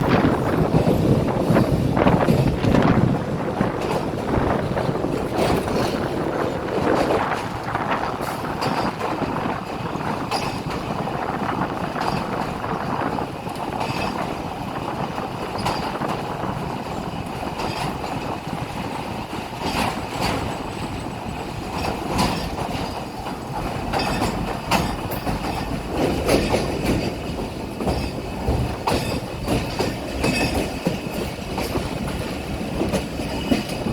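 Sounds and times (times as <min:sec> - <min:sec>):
train wheels rumbling on rails: 0:00.0 - 0:33.9
wheels clacking over rail joints: 0:00.0 - 0:33.9.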